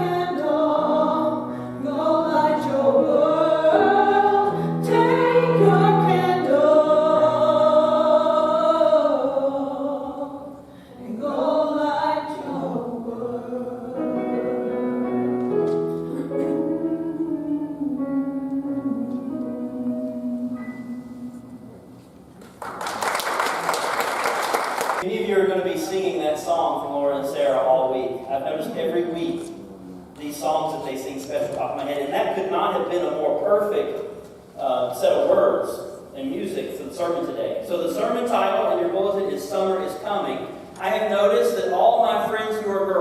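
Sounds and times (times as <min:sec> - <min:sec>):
women singing worship song: 0:00.0 - 0:14.4.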